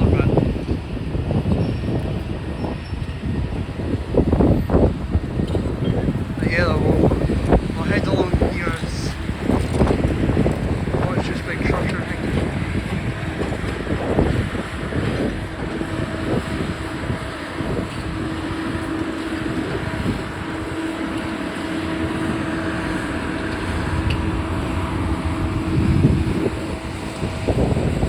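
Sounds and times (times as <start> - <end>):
heavy machinery rumbling: 0.0 - 28.0
wind buffeting microphone: 0.0 - 28.0
steady droning tone: 2.7 - 28.0.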